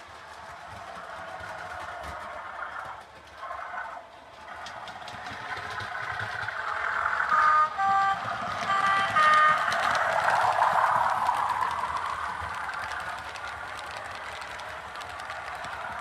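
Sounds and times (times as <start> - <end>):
model train diesel engine sound: 0.0 - 16.0
two-tone horn: 7.3 - 10.0.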